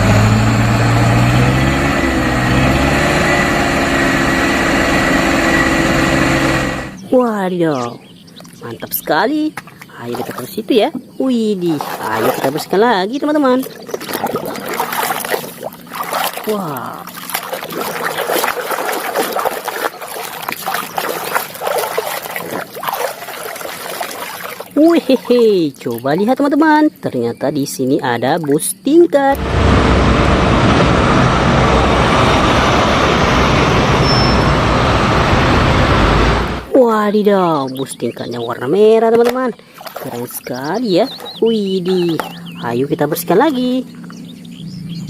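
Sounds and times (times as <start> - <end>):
truck engine idling: 0.0 - 7.1, 29.4 - 36.7
water trickling and splashing: 8.1 - 29.1, 37.3 - 44.3
faint high whistle: 34.0 - 34.6.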